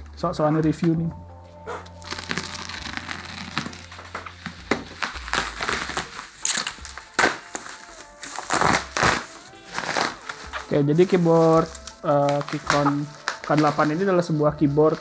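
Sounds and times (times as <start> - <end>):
packaging rustling and crinkling: 1.7 - 15.0.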